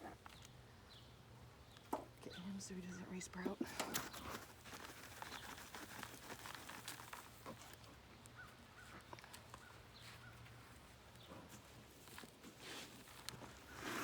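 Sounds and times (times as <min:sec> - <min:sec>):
hands digging through potting soil: 0:03.4 - 0:07.9, 0:08.9 - 0:14.0.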